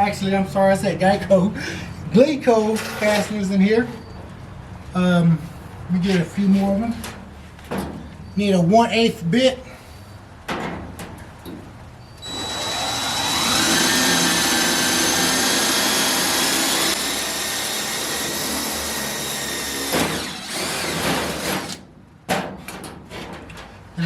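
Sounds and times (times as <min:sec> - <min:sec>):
electric drill drilling sheet steel: 0:12.2 - 0:21.8.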